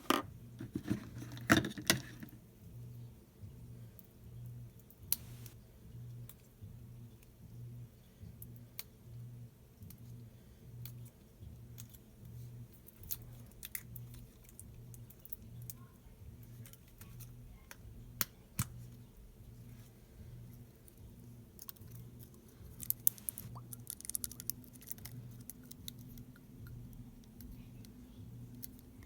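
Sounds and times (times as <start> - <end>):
low pulsing hum: 11.4 - 29.0.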